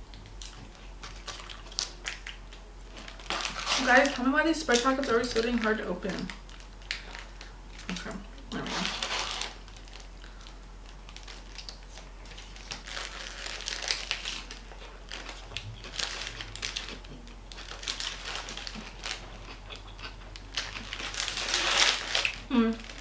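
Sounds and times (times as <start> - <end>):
food packaging crinkling: 0.1 - 23.0.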